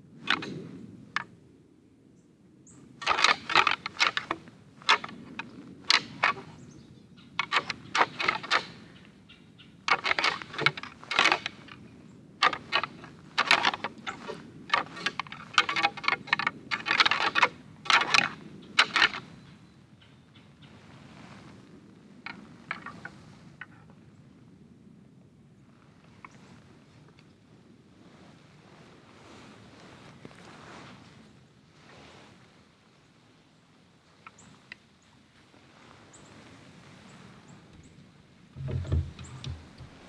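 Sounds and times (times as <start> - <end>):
antlers clacking together: 0.3 - 0.5, 3.0 - 6.6, 7.4 - 8.9, 9.9 - 19.3, 22.7 - 23.0, 38.6 - 40.0.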